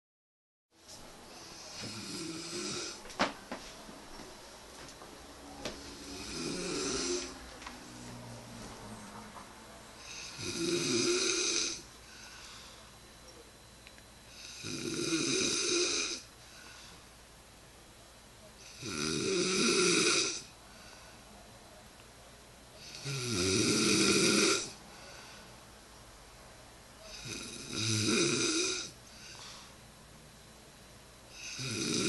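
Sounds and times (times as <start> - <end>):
woman snoring: 1.4 - 3.0, 5.9 - 7.4, 10.0 - 12.6, 14.3 - 16.8, 18.6 - 20.5, 22.8 - 25.2, 27.0 - 29.6, 31.3 - 32.0.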